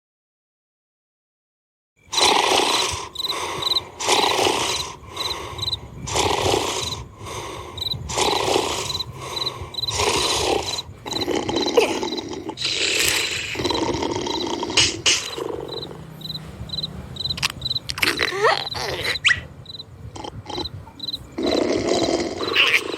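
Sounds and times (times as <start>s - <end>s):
crickets chirping: 2.0s - 22.9s
person snoring: 2.1s - 16.3s, 20.2s - 22.9s.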